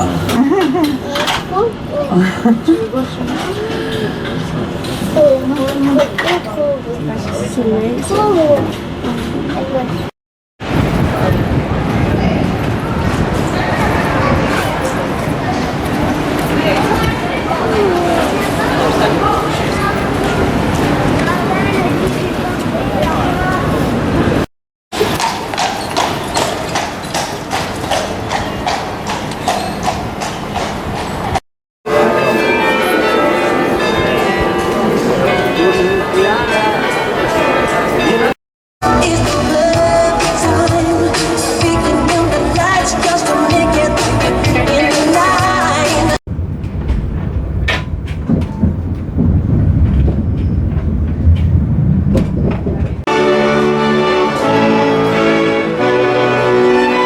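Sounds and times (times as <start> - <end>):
horse hooves clip-clopping on street: 25.0 - 31.4
vehicle rumble: 45.8 - 53.1.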